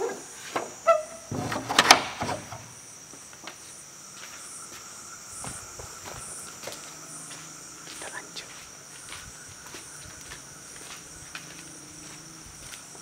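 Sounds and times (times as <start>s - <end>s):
crickets chirping: 0.0s - 13.0s
loud clatter of knocks and rattling: 1.3s - 2.7s.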